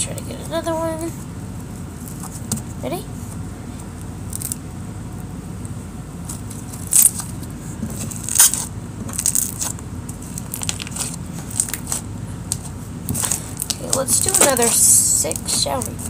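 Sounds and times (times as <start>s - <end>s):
slime squelching and crackling: 6.2s - 16.0s.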